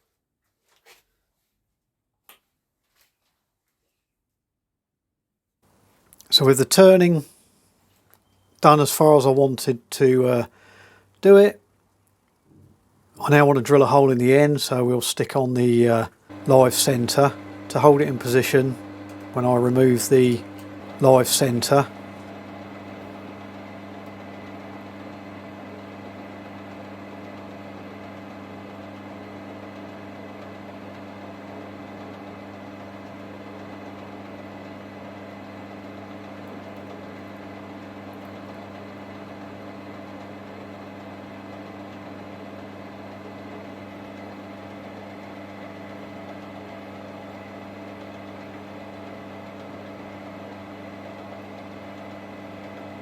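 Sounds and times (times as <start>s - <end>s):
metal lathe humming: 16.3s - 53.0s.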